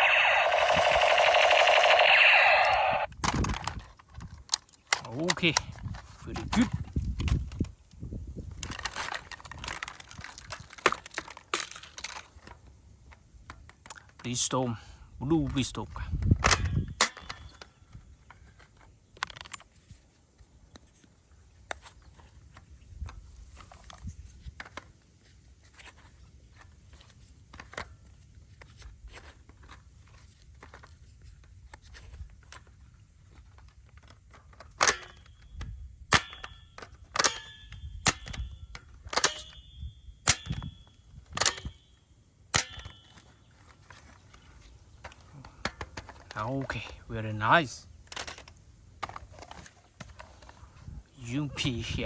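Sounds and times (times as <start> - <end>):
toy pistol clicking: 0.0 - 3.1.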